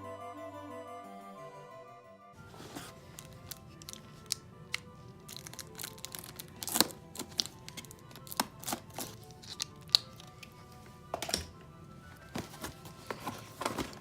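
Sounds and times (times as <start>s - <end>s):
background music: 0.0s - 14.0s
cardboard box being opened: 2.4s - 4.0s, 12.2s - 14.0s.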